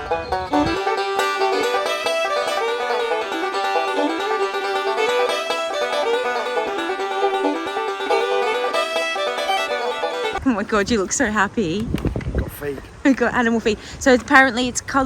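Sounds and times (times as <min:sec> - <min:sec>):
bluegrass banjo tune: 0:00.0 - 0:10.4.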